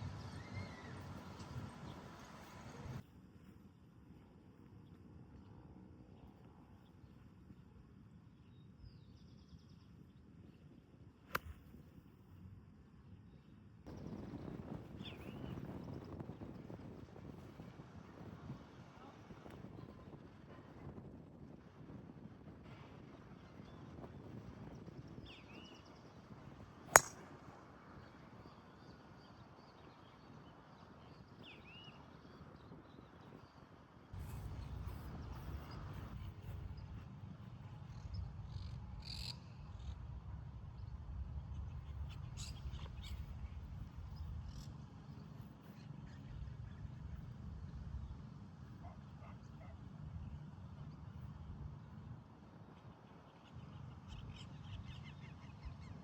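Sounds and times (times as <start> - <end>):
golf club striking ball: 26.9 - 27.2.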